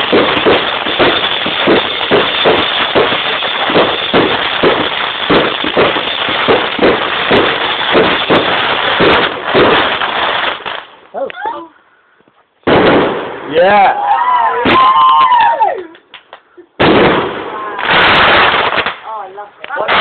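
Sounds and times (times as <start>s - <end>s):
fireworks bangs: 0.0s - 11.1s, 12.6s - 15.6s, 16.8s - 19.1s, 19.7s - 20.0s
fireworks crackle: 0.0s - 11.3s, 16.8s - 20.0s.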